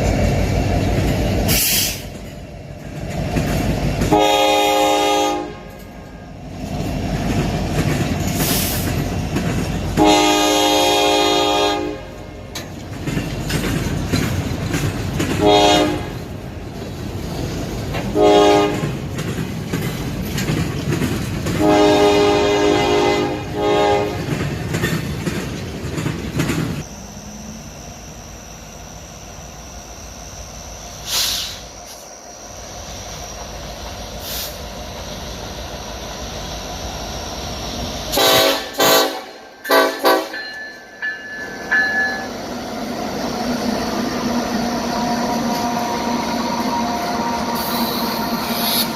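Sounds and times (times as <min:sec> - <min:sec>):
passing train rumble and clickety-clack: 0:00.0 - 0:48.9
locomotive air horn blasts: 0:04.1 - 0:05.8, 0:10.0 - 0:12.3, 0:15.4 - 0:16.3, 0:18.1 - 0:18.9, 0:21.6 - 0:24.3, 0:38.1 - 0:40.5.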